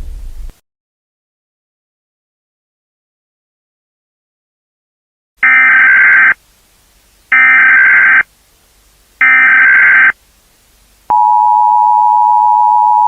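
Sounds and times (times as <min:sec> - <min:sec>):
electronic data bursts: 0:05.4 - 0:06.4, 0:07.3 - 0:08.3, 0:09.2 - 0:10.2
two-tone attention signal: 0:05.4 - 0:06.4, 0:07.3 - 0:08.2, 0:09.2 - 0:10.1.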